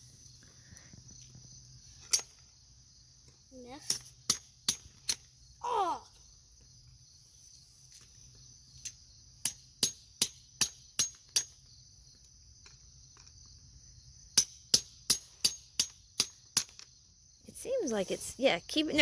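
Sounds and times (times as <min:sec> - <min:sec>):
hammer striking rock: 0:03.9 - 0:05.3, 0:09.4 - 0:11.6, 0:14.4 - 0:16.9.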